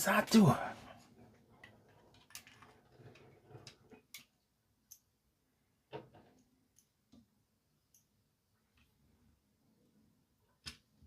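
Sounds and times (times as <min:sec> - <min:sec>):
small plastic parts clicking: 0:01.6 - 0:05.1.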